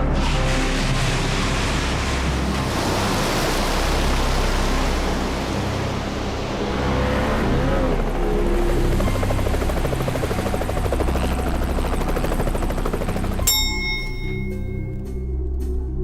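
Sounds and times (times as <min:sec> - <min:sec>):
sea waves washing: 0:00.0 - 0:13.5.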